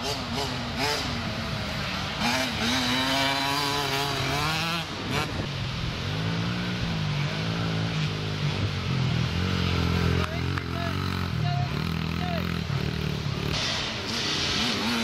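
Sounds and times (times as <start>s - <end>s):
motocross bike engine revving: 0.0s - 15.0s
other motorbike engines running: 0.0s - 15.0s.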